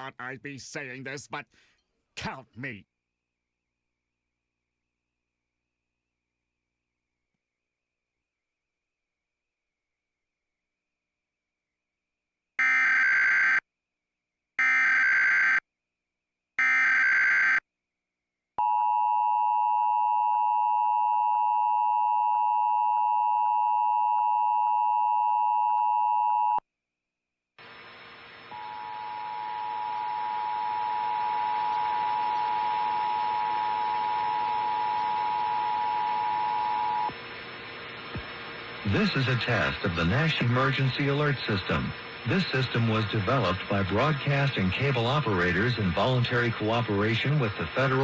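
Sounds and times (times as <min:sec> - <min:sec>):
hiss with steady tone: 0:27.6 - 0:48.0.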